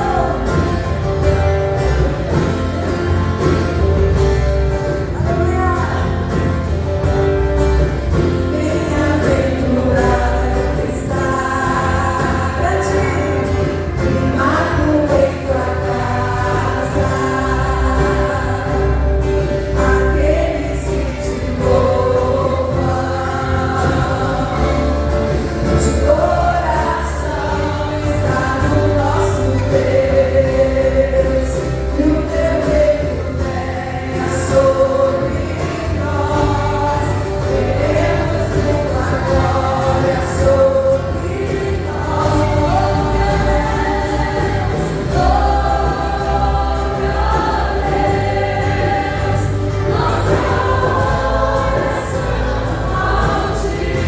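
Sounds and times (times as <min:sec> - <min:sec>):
choir singing: 0:00.0 - 0:03.8, 0:05.0 - 0:54.0
band with pulsing bass: 0:00.0 - 0:54.0.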